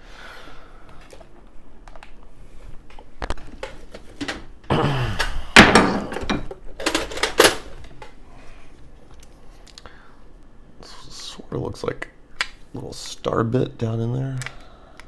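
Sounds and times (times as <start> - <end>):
hard objects clicking and knocking: 5.2 - 8.2
sharp clunks: 5.6 - 6.5.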